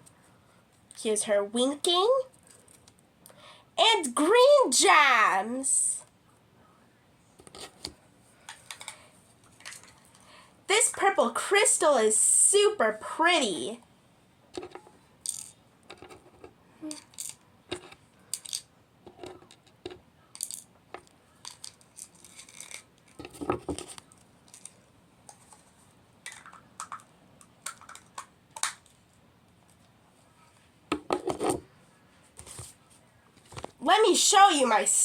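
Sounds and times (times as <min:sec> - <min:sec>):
plastic toy pieces clicking: 0:16.9 - 0:24.8, 0:26.2 - 0:28.9.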